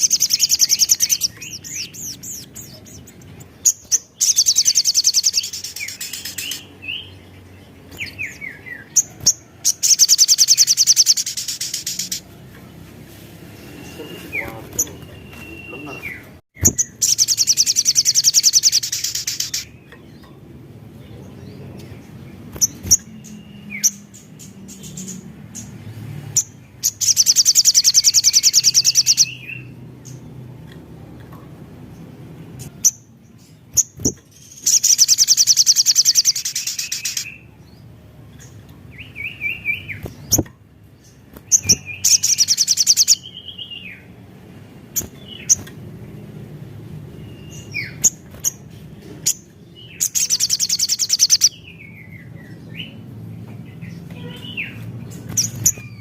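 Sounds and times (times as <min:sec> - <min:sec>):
bird singing high-pitched trills: 0:00.0 - 0:12.3, 0:13.6 - 0:20.4, 0:26.4 - 0:30.3, 0:32.6 - 0:40.5, 0:41.1 - 0:44.2, 0:49.2 - 0:53.0
bird chirps: 0:00.0 - 0:12.7, 0:13.4 - 0:30.7, 0:31.9 - 0:44.3, 0:44.9 - 0:46.2, 0:46.9 - 0:56.0.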